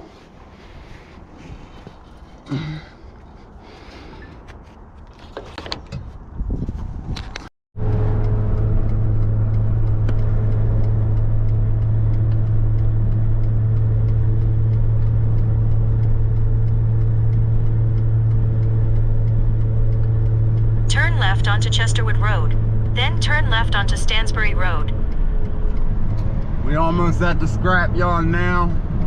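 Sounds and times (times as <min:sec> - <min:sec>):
pickup truck cab drone: 0:07.8 - 0:29.0.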